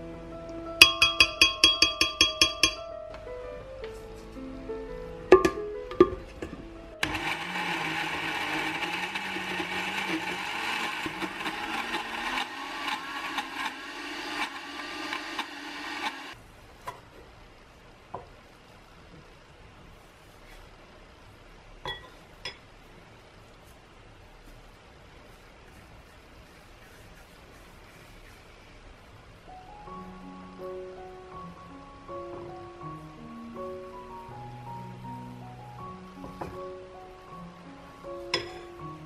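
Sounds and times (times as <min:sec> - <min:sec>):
small electric motor running: 0:07.0 - 0:16.4.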